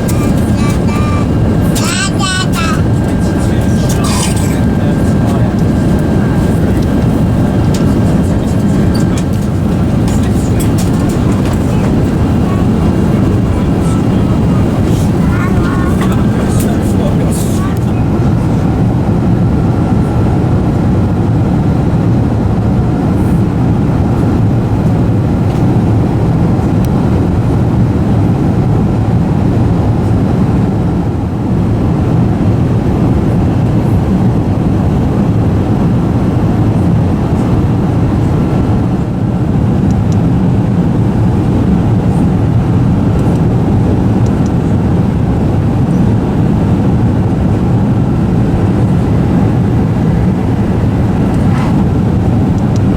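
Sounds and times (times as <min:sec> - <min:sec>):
faint steady whine: 0:00.0 - 0:20.8
aircraft cabin engine roar: 0:00.0 - 0:52.9.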